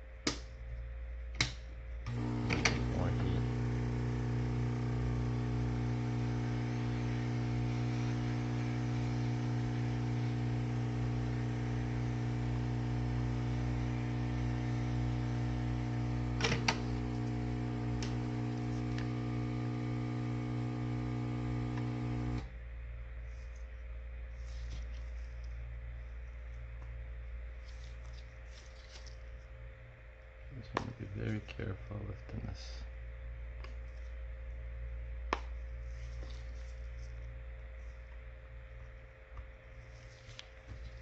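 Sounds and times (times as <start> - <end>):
hot-air gun humming blow: 2.1 - 22.5.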